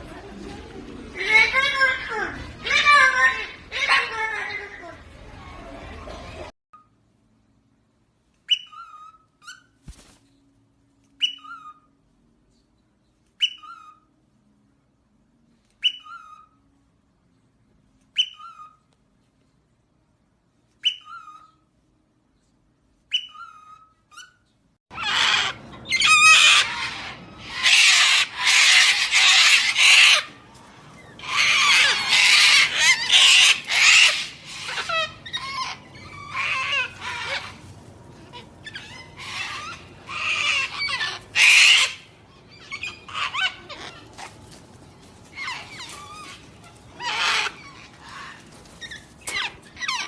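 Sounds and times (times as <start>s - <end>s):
parrot screeching and squawking: 1.2s - 4.8s, 23.1s - 44.6s, 45.2s - 50.0s.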